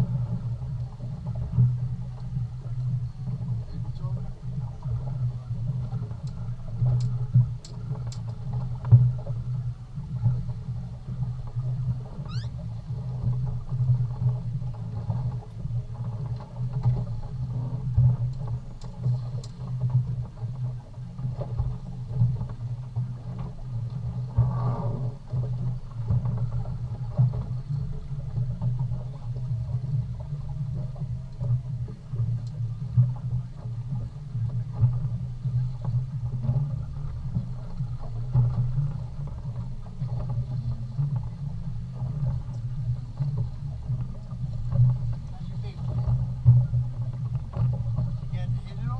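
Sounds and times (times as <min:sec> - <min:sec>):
boat engine humming: 0:00.0 - 0:48.9
faint clicks: 0:05.8 - 0:09.3, 0:15.0 - 0:20.4
rising squeak: 0:12.2 - 0:12.6.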